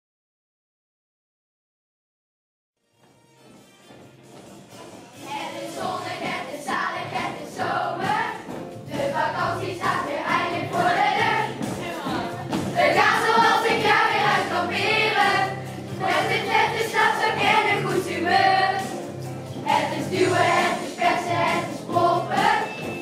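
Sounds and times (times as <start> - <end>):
instrumental accompaniment: 2.8 - 23.0
children's choir singing: 4.8 - 23.0.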